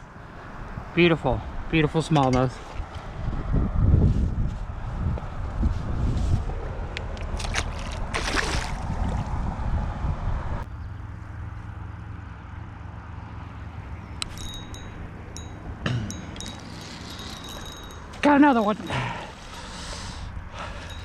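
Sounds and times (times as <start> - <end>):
wind buffeting microphone: 0.0 - 10.7, 13.9 - 21.0
flowing river water: 7.2 - 9.4.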